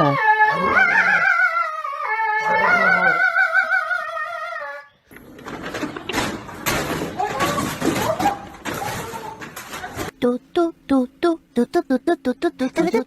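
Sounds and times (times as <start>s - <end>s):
dog howling: 0.0s - 4.9s
noisy room sound: 0.0s - 13.0s.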